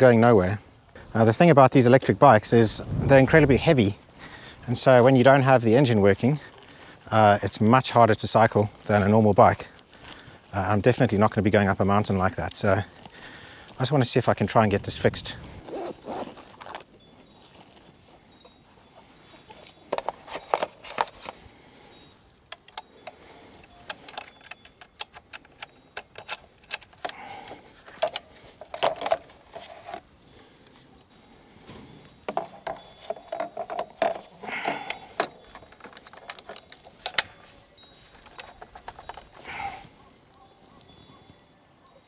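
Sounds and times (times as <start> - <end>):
keys jangling: 22.6 - 30.0, 32.3 - 39.9.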